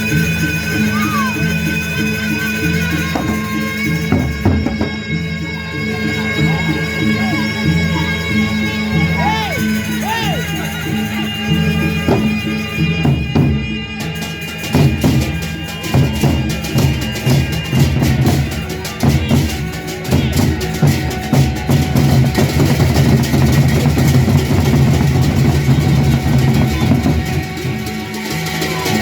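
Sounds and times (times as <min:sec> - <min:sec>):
drums in quick rhythm: 0:00.0 - 0:29.0.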